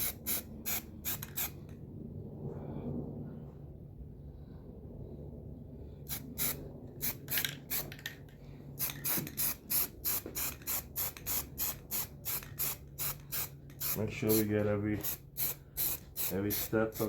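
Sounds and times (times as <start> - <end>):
low steady hum: 0.0 - 17.0
aerosol can spraying: 8.8 - 17.0.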